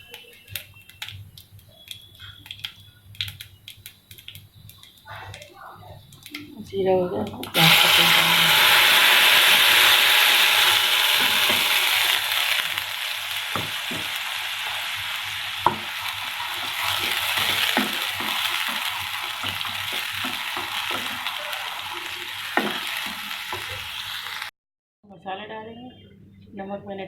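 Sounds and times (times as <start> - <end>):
vegetables sizzling in hot oil: 7.2 - 24.5.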